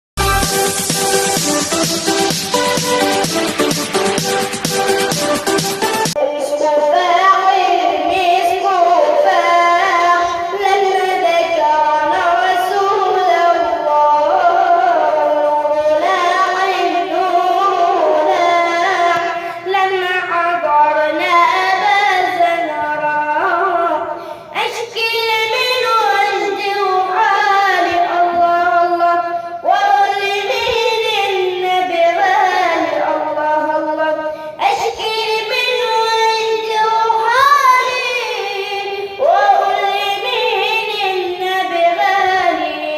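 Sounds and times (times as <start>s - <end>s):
singer breathing: 19.3s - 19.7s, 24.0s - 24.6s, 29.2s - 29.7s, 34.2s - 34.6s.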